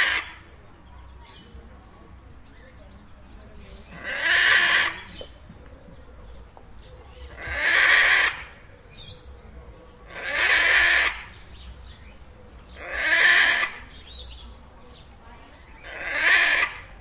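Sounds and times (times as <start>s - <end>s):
macaw squawking: 7.3s - 8.6s, 10.1s - 11.4s, 12.8s - 14.1s, 15.8s - 16.9s.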